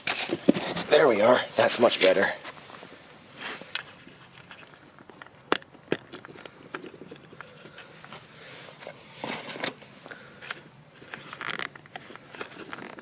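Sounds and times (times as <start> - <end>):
scraping rustles: 0.0 - 5.2, 6.1 - 13.0
plastic clicks and rustling: 3.7 - 13.0.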